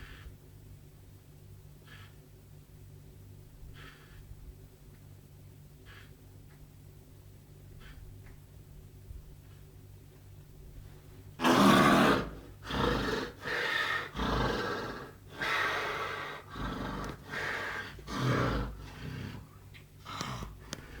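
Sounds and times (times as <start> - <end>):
loud snoring: 11.4 - 19.4.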